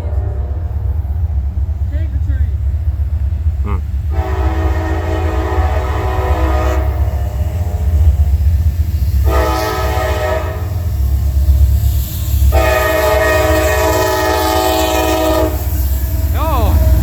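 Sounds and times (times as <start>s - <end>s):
train passing rumble: 0.0s - 17.0s
locomotive air horn blasts: 4.1s - 8.2s, 9.2s - 10.8s, 12.5s - 15.7s.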